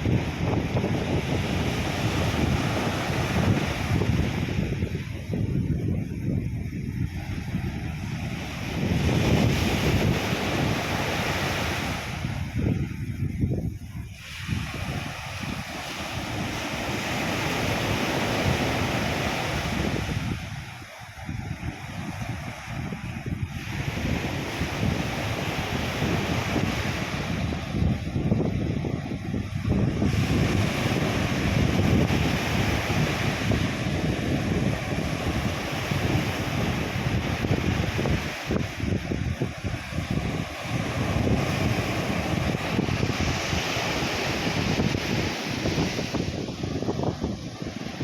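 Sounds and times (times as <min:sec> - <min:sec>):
sea surf washing on beach: 0:00.0 - 0:48.0
wind buffeting microphone: 0:00.0 - 0:48.0
sea wave breaking on beach: 0:29.4 - 0:48.0.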